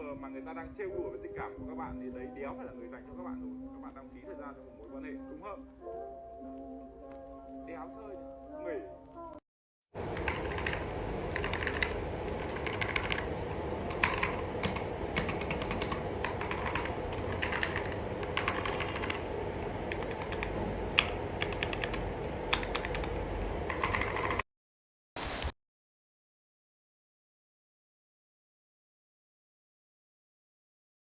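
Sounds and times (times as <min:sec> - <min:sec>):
low background hum: 0:10.0 - 0:24.4
mechanical keyboard typing: 0:10.0 - 0:24.4.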